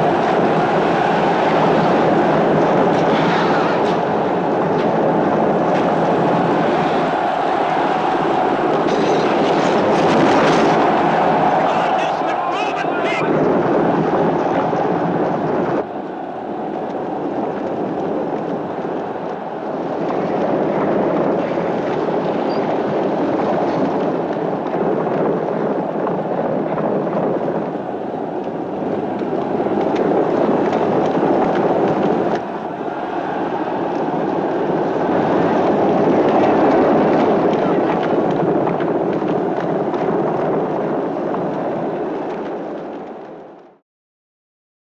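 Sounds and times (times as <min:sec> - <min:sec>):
horses galloping: 0:00.0 - 0:15.8.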